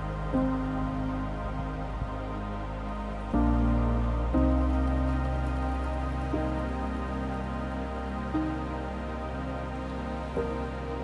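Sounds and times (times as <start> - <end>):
soft new-age music: 0.0 - 11.0.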